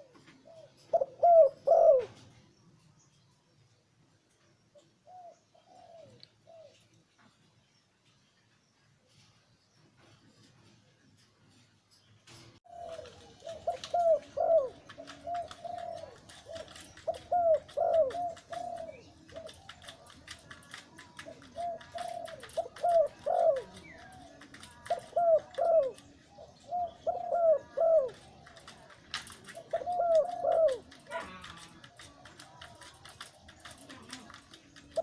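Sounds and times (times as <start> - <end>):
dove cooing: 0.0 - 2.3, 4.8 - 6.8, 12.7 - 35.0.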